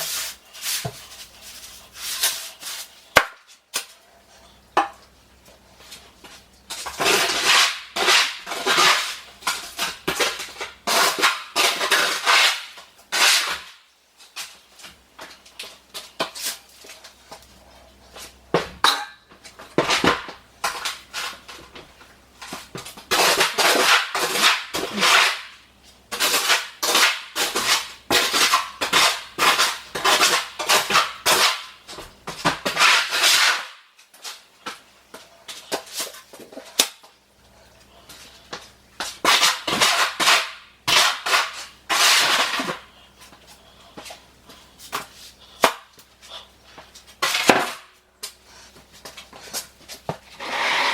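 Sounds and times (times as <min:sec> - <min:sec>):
trowel scraping mortar: 0:00.0 - 0:03.2, 0:06.7 - 0:13.7, 0:22.4 - 0:34.4, 0:39.0 - 0:43.3, 0:50.3 - 0:50.9.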